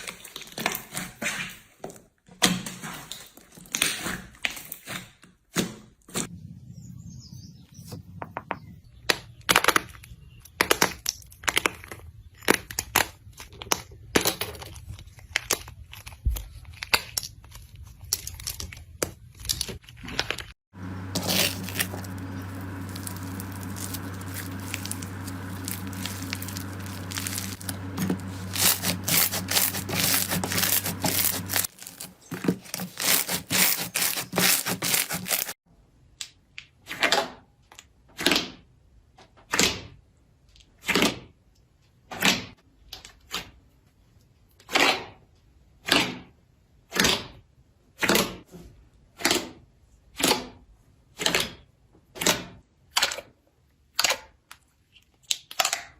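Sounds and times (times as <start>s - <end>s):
low steady hum: 20.8s - 32.1s
slime squishing with sticky clicks: 53.9s - 55.9s.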